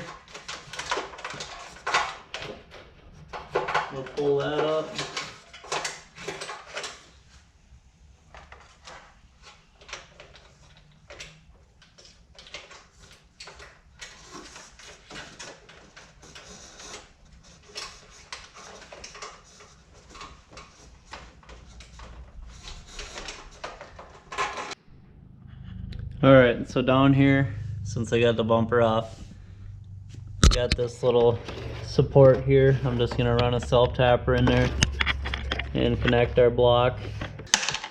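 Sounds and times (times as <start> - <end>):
wiring harness rubbing and scraping: 12.0 - 24.8, 27.2 - 37.5.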